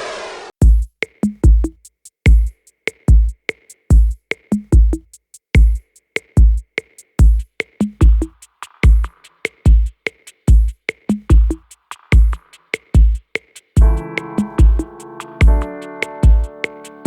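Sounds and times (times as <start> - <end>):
electronic music with drum-machine beat: 7.2 - 17.0.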